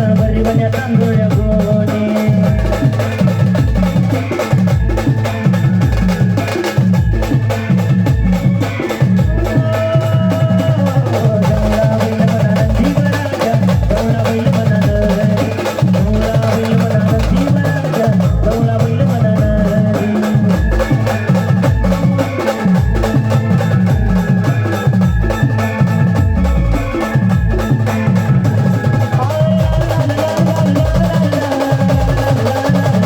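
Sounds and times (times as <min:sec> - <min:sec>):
heavy drum beat: 0:00.0 - 0:33.0.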